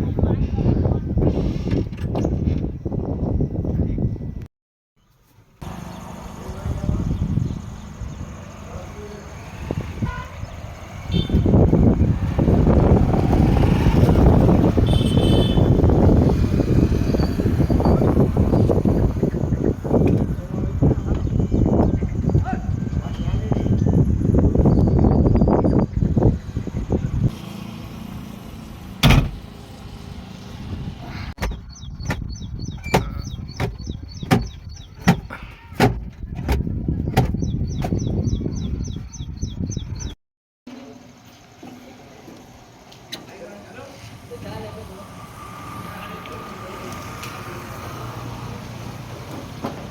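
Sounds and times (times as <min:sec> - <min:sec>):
diesel engine rough rumble: 0:05.6 - 0:22.3.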